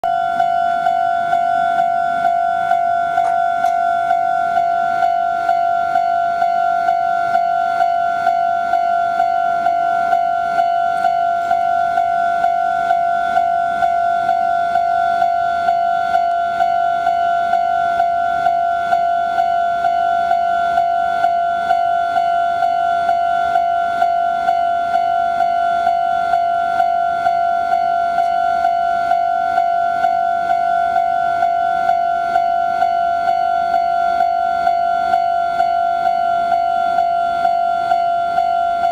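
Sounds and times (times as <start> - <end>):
level crossing bell ringing: 2.8 - 5.7.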